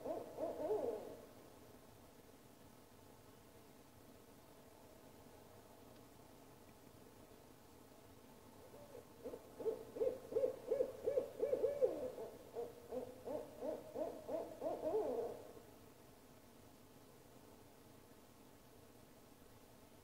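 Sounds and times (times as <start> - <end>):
owl hooting rapidly: 0.0 - 1.2, 8.6 - 15.5.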